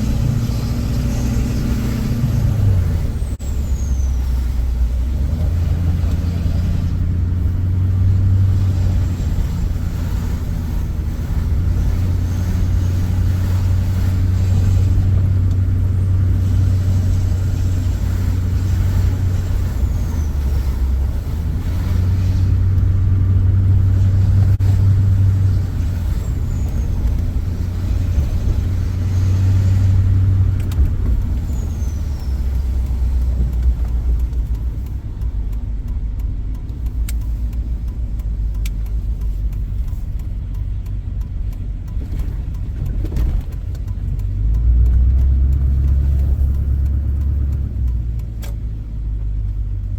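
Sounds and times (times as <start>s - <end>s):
diesel truck engine pulling: 0.0s - 49.9s.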